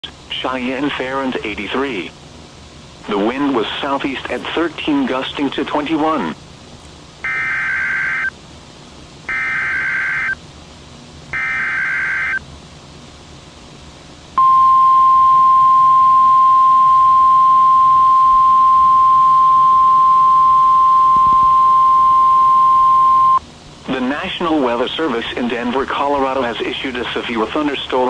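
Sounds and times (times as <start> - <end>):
steady warning alarm tone: 7.2 - 8.4, 9.3 - 10.4, 11.4 - 12.4, 14.4 - 23.4.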